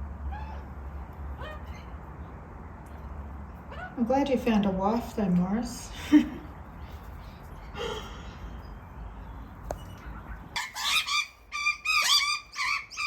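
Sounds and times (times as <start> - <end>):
young magpies begging calls: 10.2 - 13.0.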